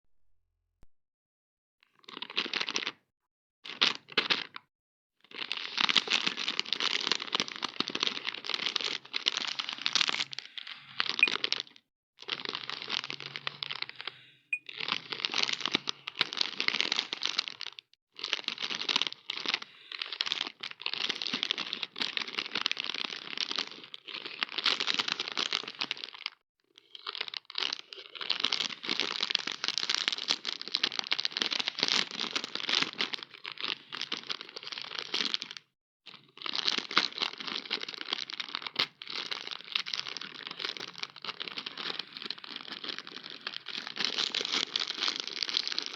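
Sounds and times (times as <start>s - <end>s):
plastic wrappers crinkling and tearing: 5.3s - 14.1s, 14.7s - 45.9s.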